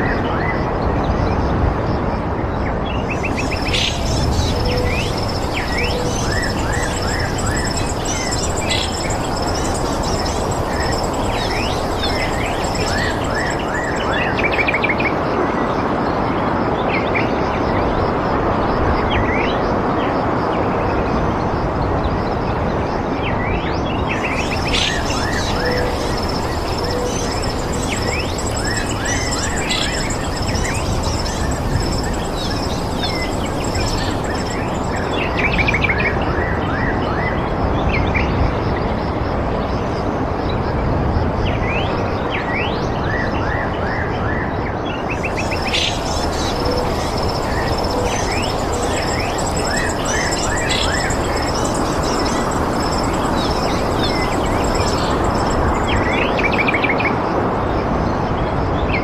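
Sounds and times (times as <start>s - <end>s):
birds chirping and twittering: 2.9s - 15.2s, 23.8s - 36.1s, 45.0s - 57.1s
steady rushing background: 3.1s - 14.9s, 24.1s - 35.8s, 45.1s - 56.7s
fast high trill: 24.2s - 35.6s, 45.2s - 56.4s.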